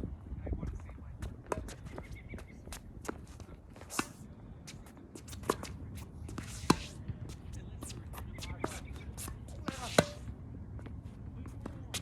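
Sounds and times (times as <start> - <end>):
wind rumble on microphone: 0.0 - 5.1
tennis balls struck and bouncing: 1.3 - 12.0.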